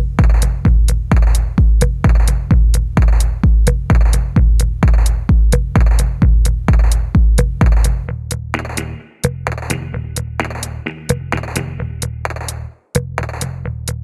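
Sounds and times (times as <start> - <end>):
heavy kick drum: 0.0 - 12.5
hi-hat clicks: 0.0 - 14.0
electronic music: 8.6 - 12.6.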